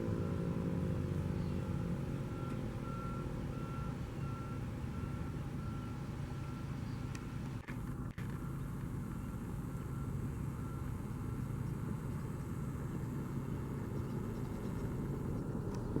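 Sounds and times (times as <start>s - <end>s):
vehicle engine idling: 0.0s - 16.0s
faint reversing alarm beeping: 0.1s - 7.4s, 8.4s - 12.0s.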